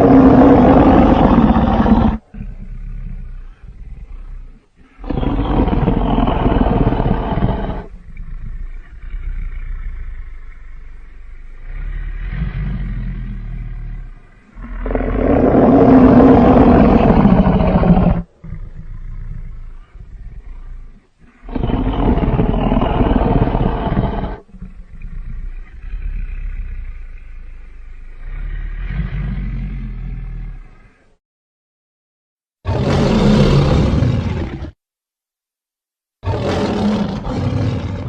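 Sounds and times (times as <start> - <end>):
loud creature roar: 0.0 - 2.8, 4.9 - 7.9, 14.6 - 18.7, 21.3 - 24.8, 32.7 - 34.8, 36.2 - 38.0
low rumbling growls: 0.0 - 31.2, 32.7 - 34.8, 36.2 - 38.0.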